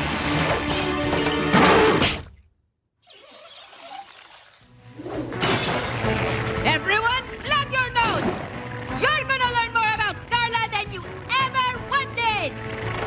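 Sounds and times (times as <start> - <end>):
cartoon background music: 4.7 - 13.0.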